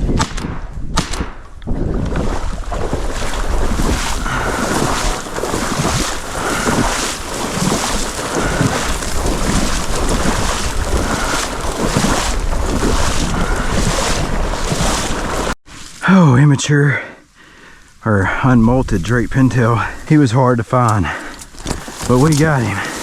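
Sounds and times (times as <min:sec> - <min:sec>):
wind on microphone: 0:00.0 - 0:15.6
wading through marsh water: 0:01.7 - 0:15.9, 0:18.7 - 0:23.0.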